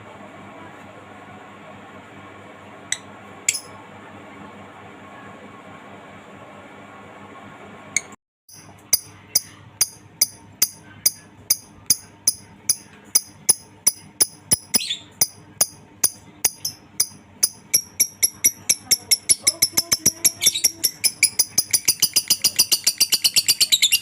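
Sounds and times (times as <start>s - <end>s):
lovebird high-pitched chirps: 11.9s - 15.4s, 16.0s - 24.0s.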